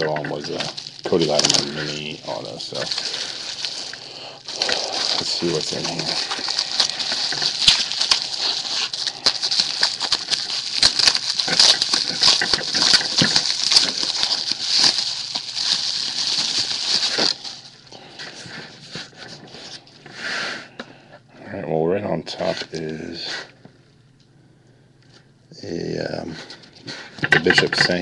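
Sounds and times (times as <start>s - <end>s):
packaging crinkling and tearing: 0.0s - 20.1s, 26.5s - 28.0s.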